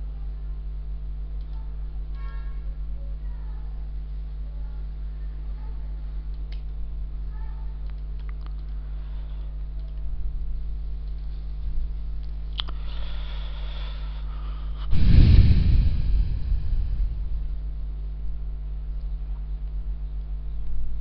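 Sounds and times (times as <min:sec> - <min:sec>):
low electrical hum: 0:00.0 - 0:21.0
faint clicks: 0:01.4 - 0:02.3, 0:06.3 - 0:06.8, 0:07.8 - 0:08.8, 0:09.4 - 0:10.1, 0:11.0 - 0:11.4, 0:12.2 - 0:12.8
loud rushing noise: 0:14.9 - 0:17.9.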